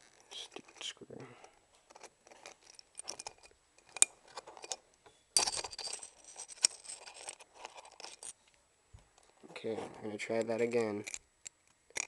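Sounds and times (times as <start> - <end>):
scraping and rattling: 5.4 - 8.4.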